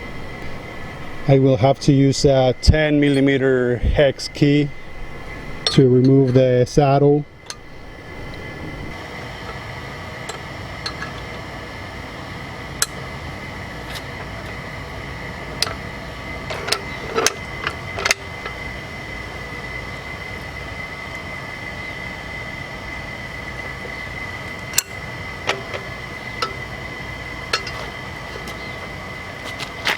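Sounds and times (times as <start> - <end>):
steady hum: 0.0 - 29.9
thin high whine: 0.0 - 29.9.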